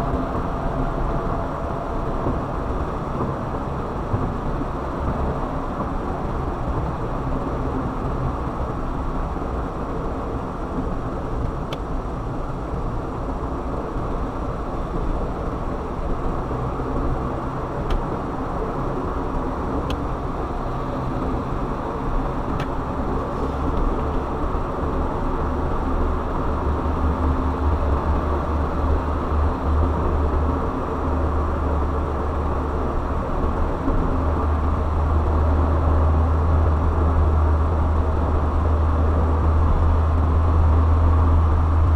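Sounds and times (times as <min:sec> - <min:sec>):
car tyre and engine noise: 0:00.0 - 0:41.9
deep low rumble: 0:26.7 - 0:41.9.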